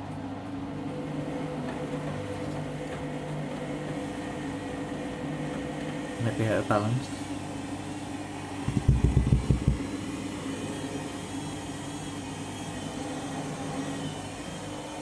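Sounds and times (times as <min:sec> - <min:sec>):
washing machine motor humming: 0:00.0 - 0:15.0
washing machine drum thumping: 0:08.6 - 0:10.0.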